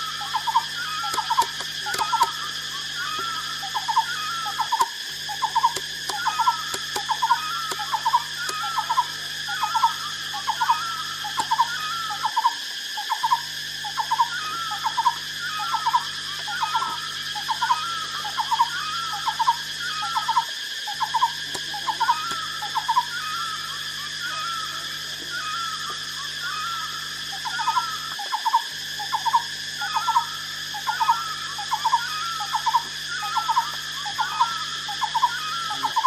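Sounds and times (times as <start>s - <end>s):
high insect drone: 0.0s - 36.0s.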